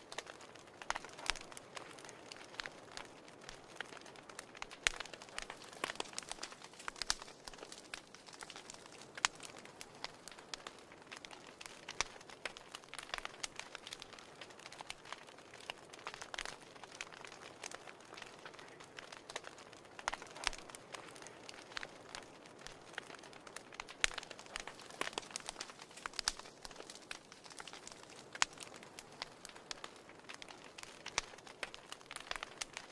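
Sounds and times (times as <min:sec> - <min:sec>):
wood fire crackling: 0:00.0 - 0:32.9.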